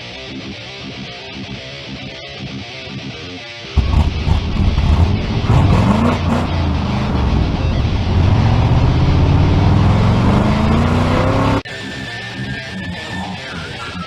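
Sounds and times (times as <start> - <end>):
car engine revving: 3.8 - 11.6.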